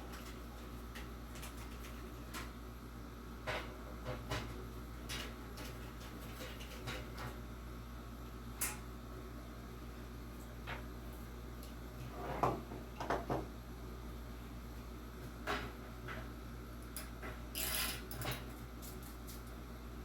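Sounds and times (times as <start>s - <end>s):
clicks of fan parts and tools: 3.5s - 7.4s, 8.6s - 8.9s, 15.5s - 19.6s.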